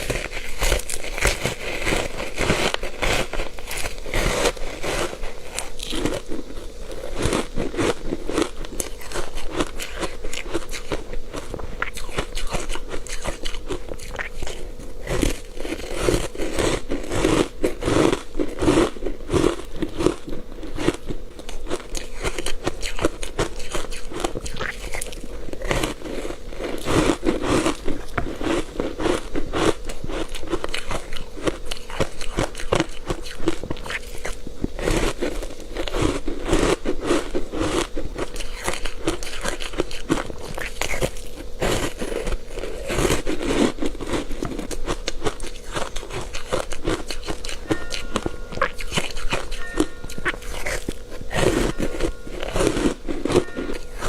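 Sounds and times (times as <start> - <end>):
ice crunching between teeth: 0.0 - 54.0.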